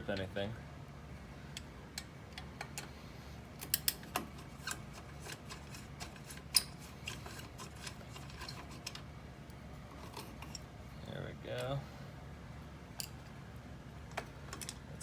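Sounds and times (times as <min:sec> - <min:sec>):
tools clicking and tapping: 0:03.6 - 0:09.0.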